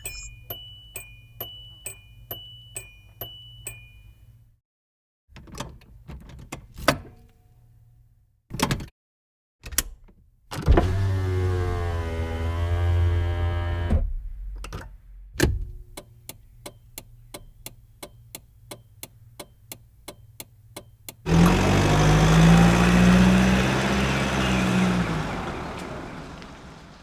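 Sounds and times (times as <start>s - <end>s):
car engine starting and running: 10.7s - 14.0s, 21.2s - 27.0s.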